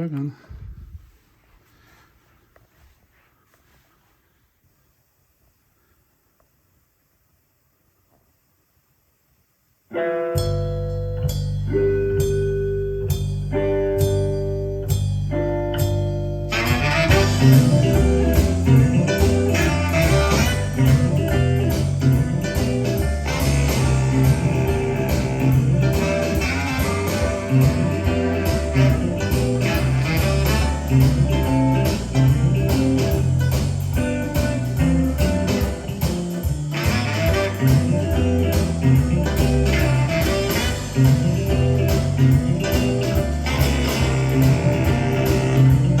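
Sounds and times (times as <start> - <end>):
blues band with guitar: 9.9 - 46.0.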